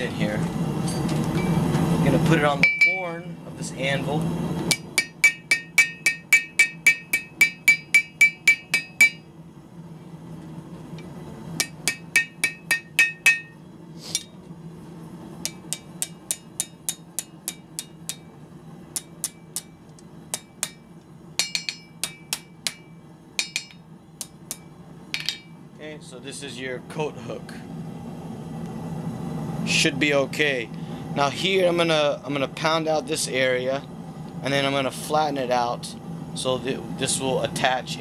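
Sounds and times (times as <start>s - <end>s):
steady low hum: 0.0s - 38.0s
hammer ringing on hot iron: 1.0s - 1.7s, 2.6s - 3.2s, 4.7s - 9.3s, 11.6s - 13.6s, 15.4s - 25.6s.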